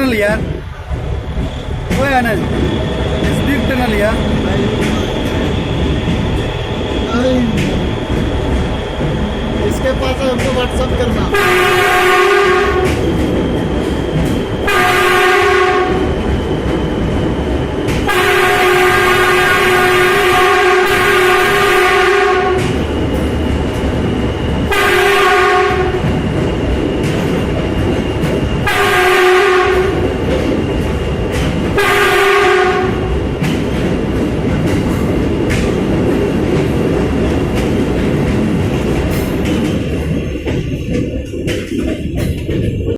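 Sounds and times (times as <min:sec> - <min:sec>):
train rumbling: 0:00.0 - 0:42.9
train horn blasts: 0:11.3 - 0:13.0, 0:14.6 - 0:16.1, 0:18.0 - 0:22.8, 0:24.7 - 0:26.0, 0:28.6 - 0:30.0, 0:31.8 - 0:33.1.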